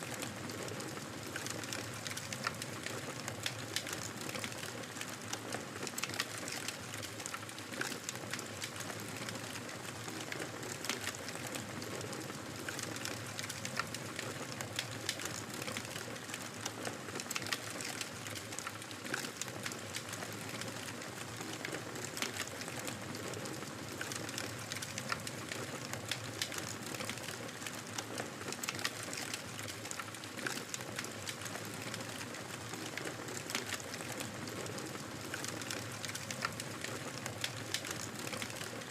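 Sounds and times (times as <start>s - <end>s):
fire crackling: 34.9s - 38.8s.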